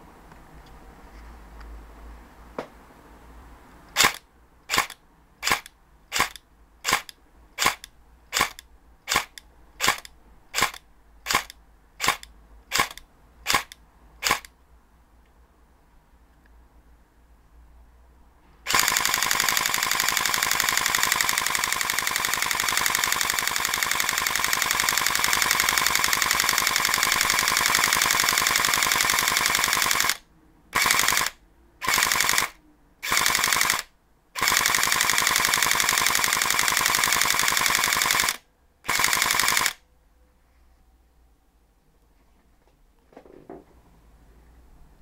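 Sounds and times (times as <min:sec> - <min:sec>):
airsoft gun firing bursts: 0:04.0 - 0:14.5, 0:18.7 - 0:30.2, 0:30.8 - 0:39.8.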